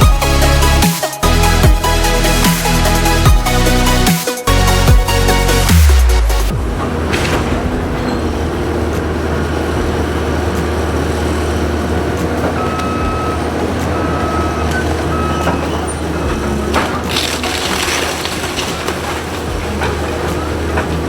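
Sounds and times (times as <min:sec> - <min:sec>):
demolition machine engine running: 0:00.0 - 0:21.0
backup alarm beeping: 0:12.6 - 0:16.6.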